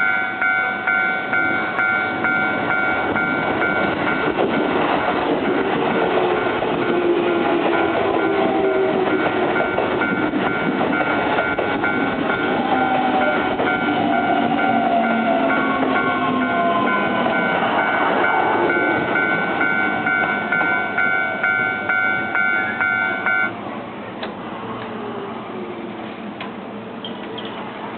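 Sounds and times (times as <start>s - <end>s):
level crossing warning bell: 0.0s - 4.8s, 6.3s - 23.6s
train wheels clacking: 0.4s - 23.5s.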